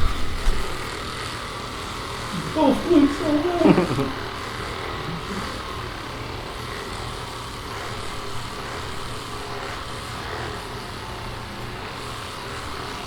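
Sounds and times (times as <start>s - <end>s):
massage device motor drone: 4.2s - 13.0s.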